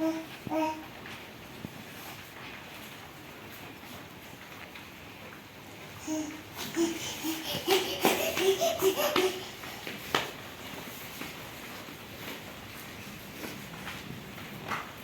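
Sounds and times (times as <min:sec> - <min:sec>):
toddler laughing and babbling: 0:00.0 - 0:01.1, 0:06.0 - 0:10.4.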